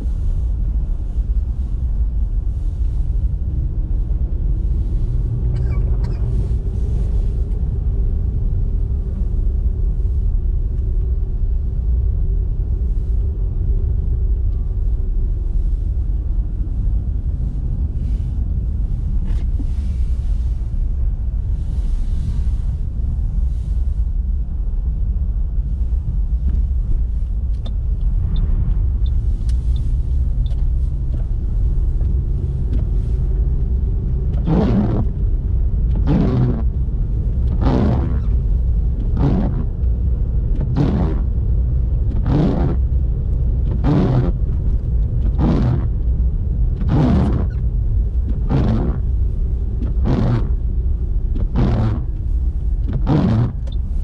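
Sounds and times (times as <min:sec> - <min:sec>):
car engine rumble: 0:00.0 - 0:54.0
windscreen wipers swishing: 0:00.0 - 0:54.0
tyres on road: 0:26.4 - 0:54.0.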